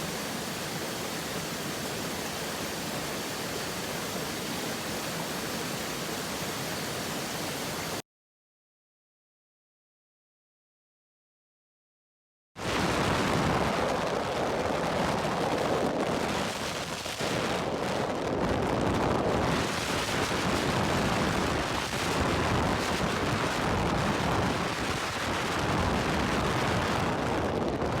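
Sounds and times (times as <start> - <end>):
waterfall rushing water: 0.0 - 8.0.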